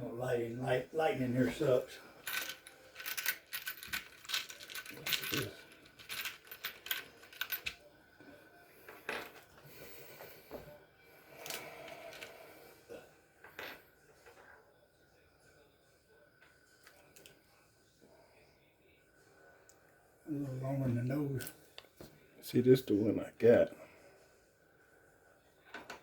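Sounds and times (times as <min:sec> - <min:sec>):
metal screws clinking and rattling: 0:02.2 - 0:07.8.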